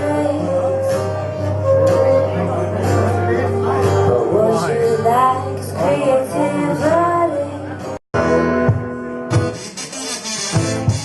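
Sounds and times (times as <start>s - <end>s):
band music with singing: 0.0s - 11.0s
band music with drum hits: 8.2s - 11.0s.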